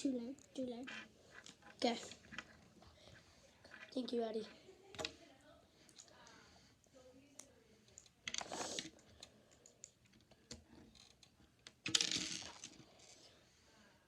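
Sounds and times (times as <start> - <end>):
plastic pieces clicking and clattering: 10.5 - 12.8.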